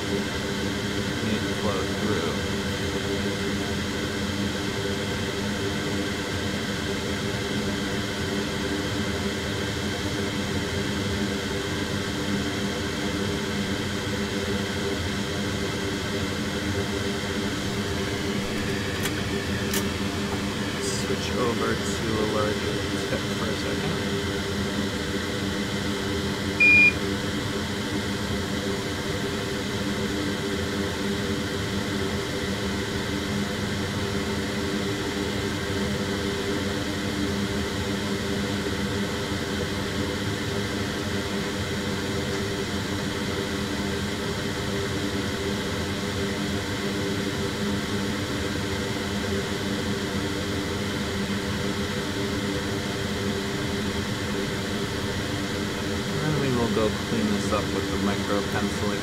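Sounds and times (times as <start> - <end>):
equipment fan hum: 15.6 - 59.0
short high electronic beep: 26.6 - 27.0.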